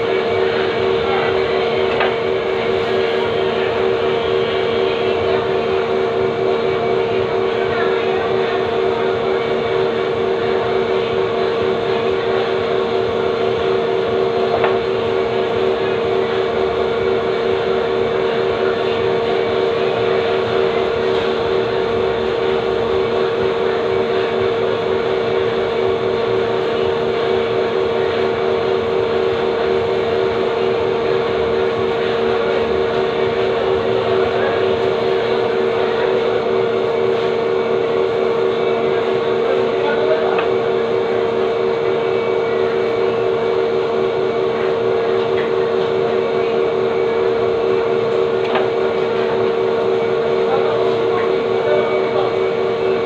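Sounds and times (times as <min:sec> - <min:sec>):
mechanical hum with whir: 0:00.0 - 0:53.0.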